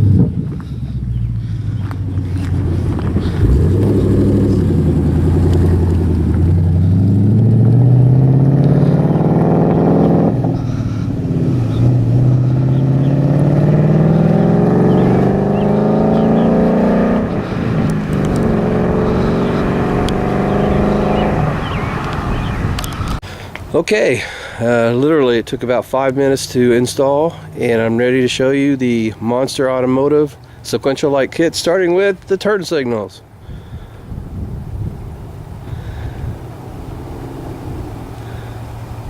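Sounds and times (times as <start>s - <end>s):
car engine accelerating: 0.0s - 23.2s, 34.9s - 39.0s.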